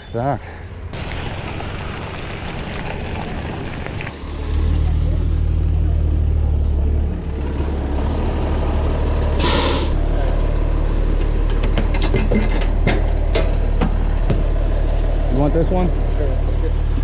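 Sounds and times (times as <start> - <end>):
diesel truck engine idling: 4.8 - 11.8, 12.7 - 17.0
air brake hiss: 9.4 - 10.0.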